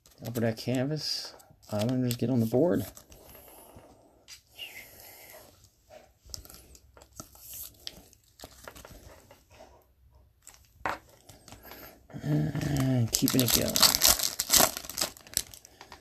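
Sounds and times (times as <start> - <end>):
card wrappers rustling and crinkling: 0.0 - 3.5, 6.3 - 9.5, 10.4 - 16.0
man talking: 0.2 - 2.9, 12.2 - 14.0.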